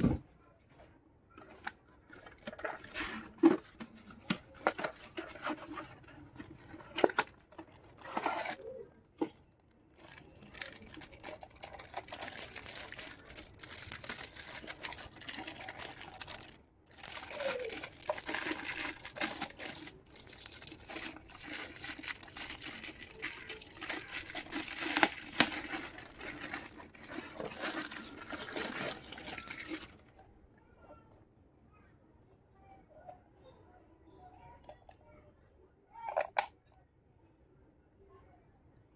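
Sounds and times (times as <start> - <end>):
plastic packaging crinkling: 2.1 - 30.2
small toy pieces clicking: 10.2 - 30.0.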